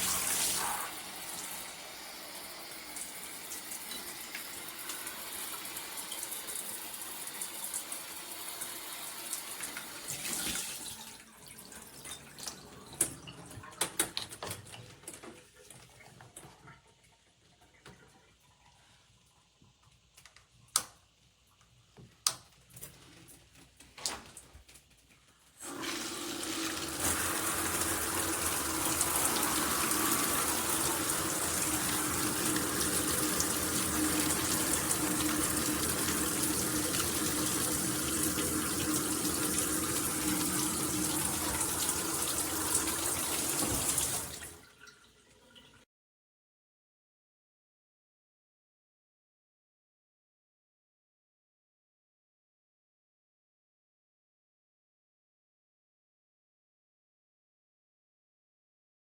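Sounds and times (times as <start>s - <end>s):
shower spraying water: 0.0s - 12.8s, 25.6s - 44.6s.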